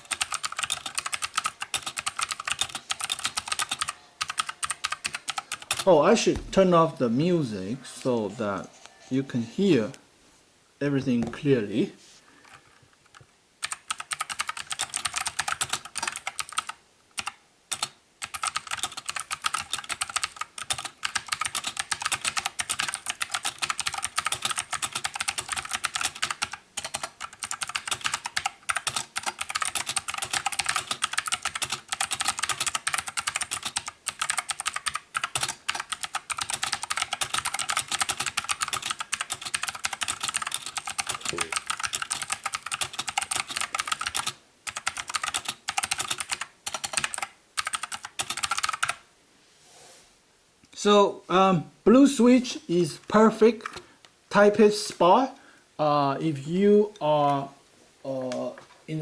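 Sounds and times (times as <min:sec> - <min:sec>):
typing on mechanical keyboard: 0:00.0 - 0:05.9, 0:13.1 - 0:49.0.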